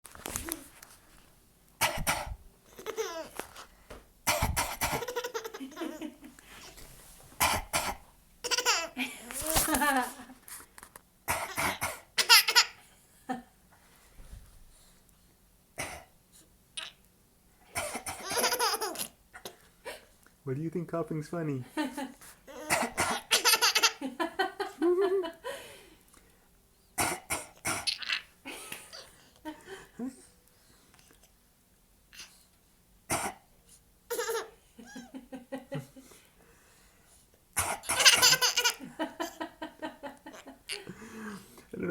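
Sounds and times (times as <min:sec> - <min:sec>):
adult coughing: 0:01.8 - 0:02.4, 0:04.3 - 0:05.0, 0:17.8 - 0:18.4
child giggling: 0:02.8 - 0:03.4, 0:04.8 - 0:06.3, 0:08.5 - 0:10.3, 0:18.2 - 0:19.5, 0:21.9 - 0:25.4, 0:34.1 - 0:35.9, 0:37.9 - 0:40.9
person coughing: 0:04.3 - 0:05.0.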